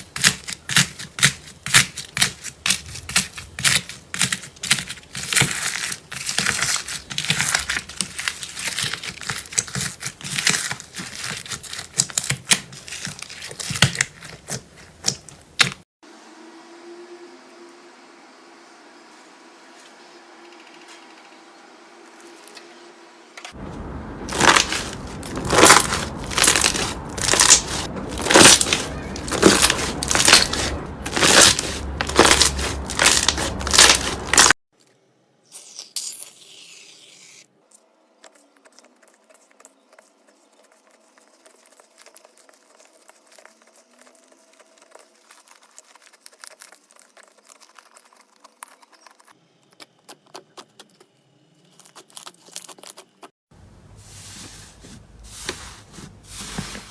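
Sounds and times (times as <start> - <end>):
slime crackling and popping: 0.0 - 15.8, 24.3 - 34.6
slime squishing: 0.0 - 15.8, 24.3 - 34.6.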